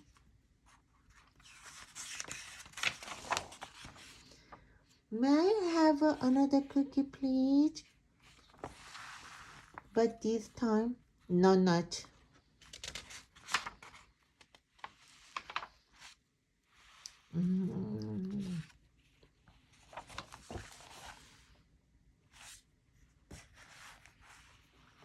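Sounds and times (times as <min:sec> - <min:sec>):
paper rustling: 0:00.0 - 0:04.7, 0:05.6 - 0:10.6, 0:12.0 - 0:17.3, 0:18.3 - 0:21.6, 0:22.3 - 0:25.0
person groaning: 0:17.4 - 0:18.6.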